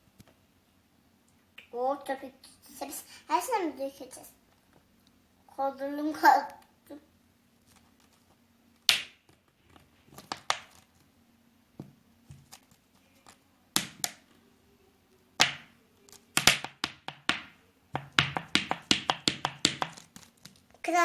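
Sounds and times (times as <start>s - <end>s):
sharp taps and slaps: 8.8s - 9.4s, 10.2s - 10.8s, 13.8s - 14.2s, 15.4s - 20.6s.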